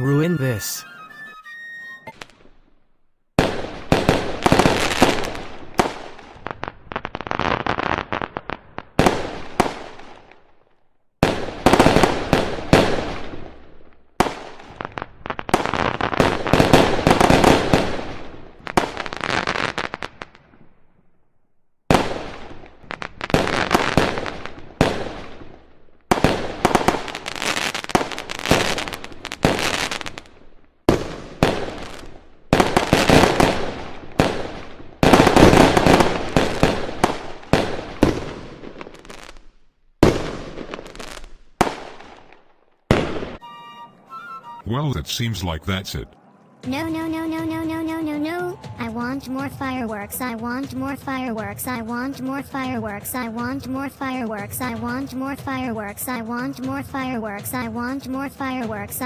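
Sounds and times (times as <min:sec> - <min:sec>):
fireworks crackling and popping: 0:03.4 - 0:20.8, 0:21.9 - 0:43.4.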